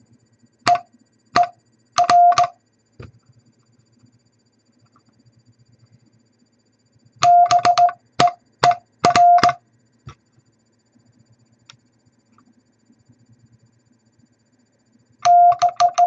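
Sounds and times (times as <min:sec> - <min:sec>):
sharp clicks: 0:01.4 - 0:02.5, 0:07.2 - 0:09.6, 0:15.2 - 0:16.0
morse code tone: 0:01.4 - 0:02.6, 0:07.2 - 0:09.6, 0:15.2 - 0:16.0.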